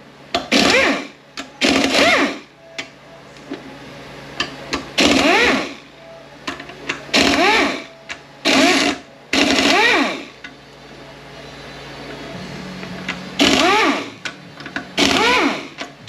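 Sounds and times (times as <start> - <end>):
power tool spinning bolts: 0.4 - 2.4, 5.0 - 5.8, 7.1 - 10.3, 13.4 - 15.9.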